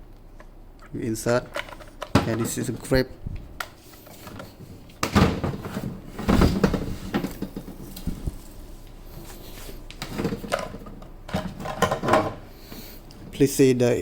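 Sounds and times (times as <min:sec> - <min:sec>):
hard plastic knocks and rubbing: 0:04.3 - 0:08.4.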